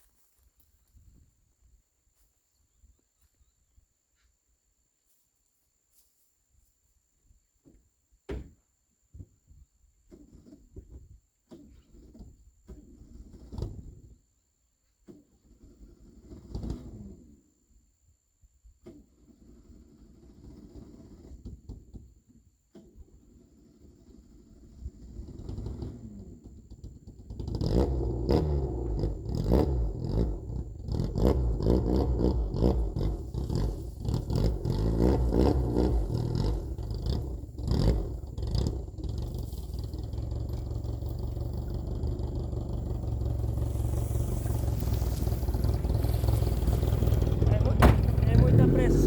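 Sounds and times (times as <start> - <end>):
pickup engine at low revs: 23.1 - 49.0
knocks and clatter: 44.4 - 48.6.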